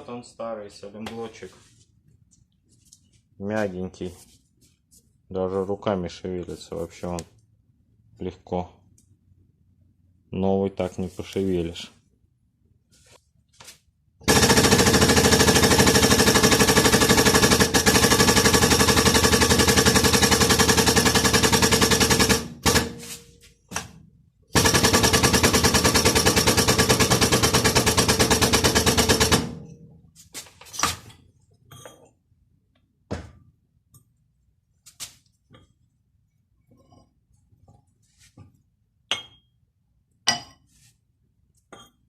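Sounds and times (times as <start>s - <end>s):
pneumatic air tool hammering: 14.3s - 23.9s, 24.5s - 29.7s.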